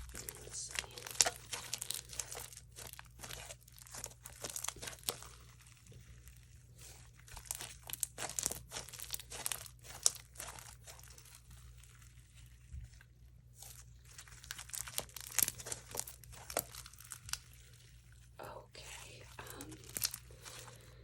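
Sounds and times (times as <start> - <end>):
slime crackling and popping: 0.0 - 18.3, 18.9 - 20.8.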